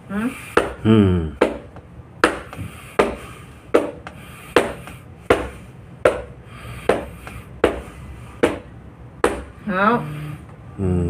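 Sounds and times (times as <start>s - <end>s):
hands slapping a back: 0.5s - 0.8s, 1.4s - 9.5s.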